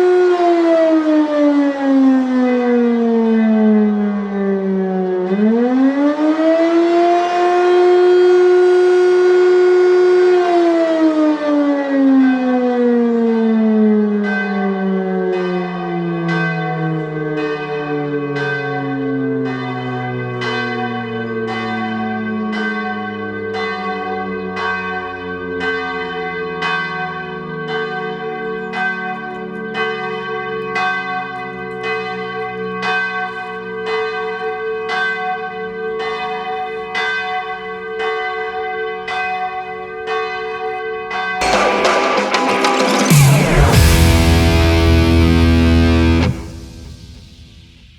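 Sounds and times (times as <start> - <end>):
church bell ringing: 0.0 - 5.6, 6.9 - 47.9
air-raid siren winding down: 0.0 - 14.0, 41.4 - 47.9.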